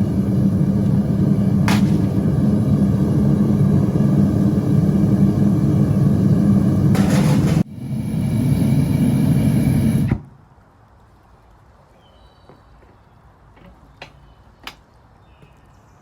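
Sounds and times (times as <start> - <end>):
loud steady roar: 0.0 - 10.2.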